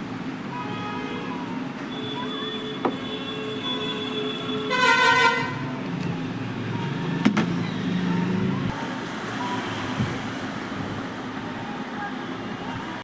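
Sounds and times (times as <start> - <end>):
vehicle horn honk: 1.9 - 5.6.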